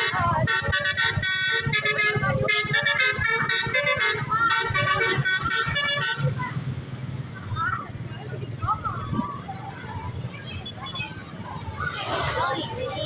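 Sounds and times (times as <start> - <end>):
bus multi-tone horn melody: 0.0 - 6.6.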